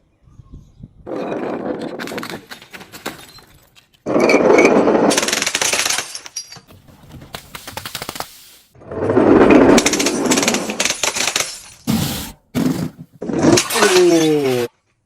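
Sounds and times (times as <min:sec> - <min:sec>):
glass crunching and breaking: 0:09.6 - 0:11.9, 0:13.4 - 0:14.6.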